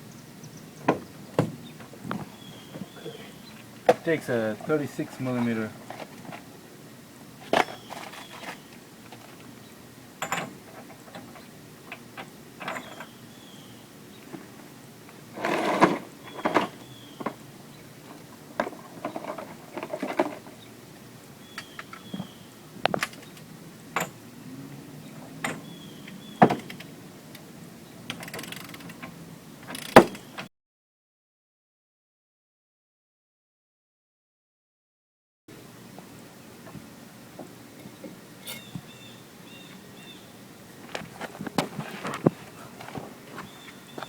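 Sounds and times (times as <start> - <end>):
metal tools clinking: 38.4 - 38.7.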